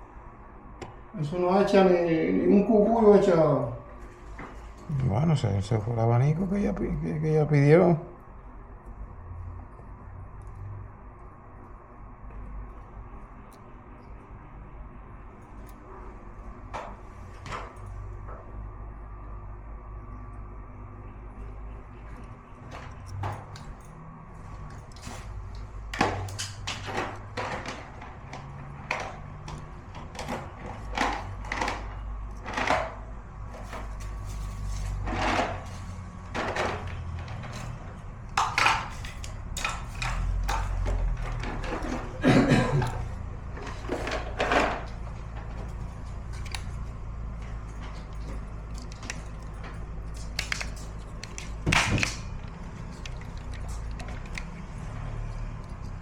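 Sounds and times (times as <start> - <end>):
low steady hum: 0.0 - 56.0
tools knocking and clicking: 22.1 - 24.0, 24.6 - 56.0.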